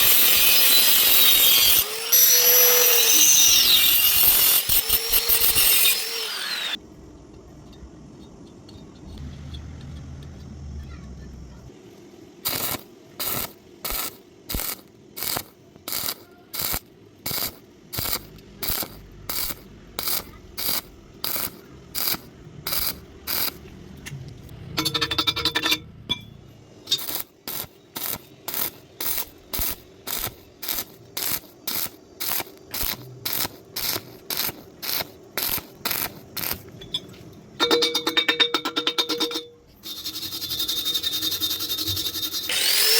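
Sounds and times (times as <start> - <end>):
welding arc bursts: 0.0 - 6.8, 12.4 - 23.6, 26.9 - 36.7, 39.8 - 42.9.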